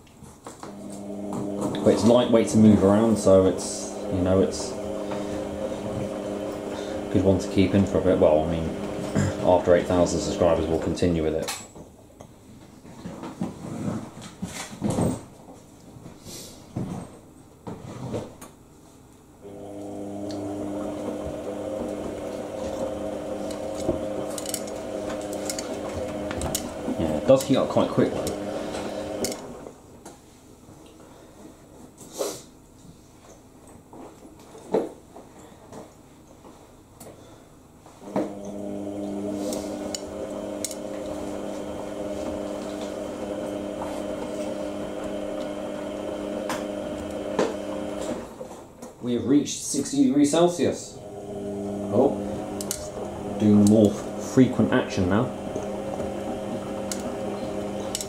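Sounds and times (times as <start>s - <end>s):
washing machine motor whining hum: 0.6s - 11.4s, 19.4s - 29.9s, 37.9s - 48.6s, 50.7s - 58.0s.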